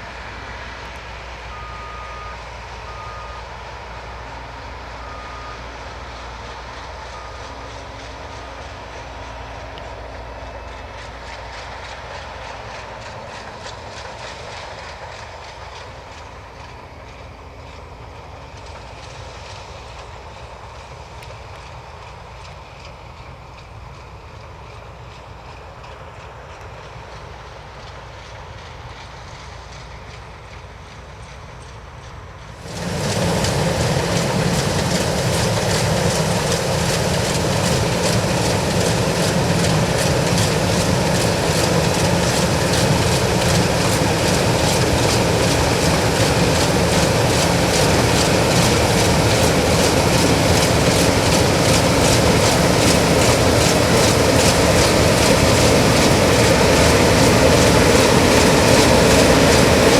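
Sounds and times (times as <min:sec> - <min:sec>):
combine harvester running: 0:00.0 - 0:59.9
fast machine clatter: 0:32.6 - 0:59.9.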